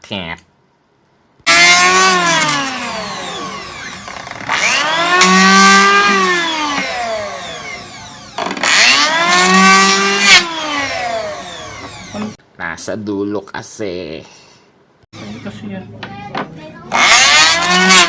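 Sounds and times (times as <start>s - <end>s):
power tool motor whine revving: 1.5s - 12.4s, 16.9s - 18.0s.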